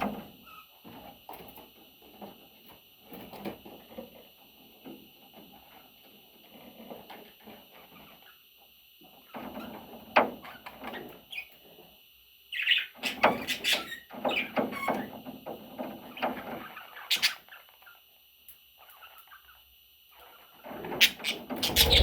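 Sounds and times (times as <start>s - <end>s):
budgerigar chirping and chattering: 21.1s - 22.0s.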